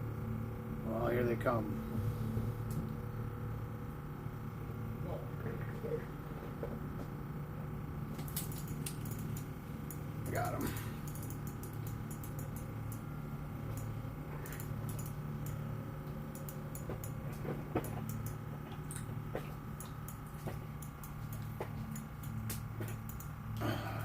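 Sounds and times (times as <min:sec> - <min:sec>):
low hum: 0:00.0 - 0:24.0
fishing reel clicking: 0:11.0 - 0:13.0.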